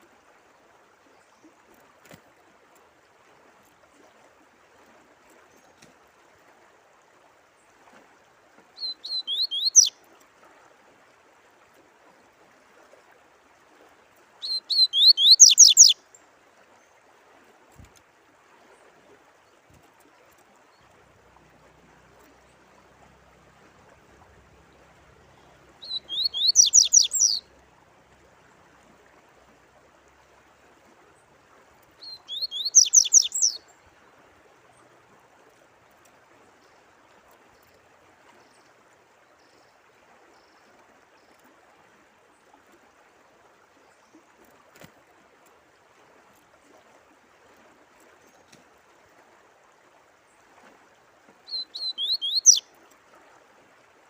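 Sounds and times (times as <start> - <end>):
faint running water: 0.0 - 54.0
songbird whistling: 8.8 - 10.0, 14.4 - 16.0, 25.8 - 27.4, 32.0 - 33.6, 51.5 - 52.6.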